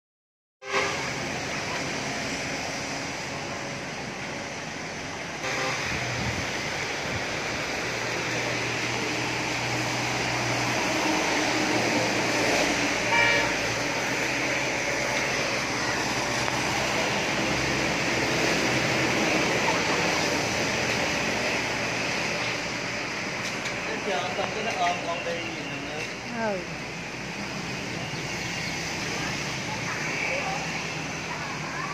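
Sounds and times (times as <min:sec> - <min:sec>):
steady rain falling: 0:01.1 - 0:25.2.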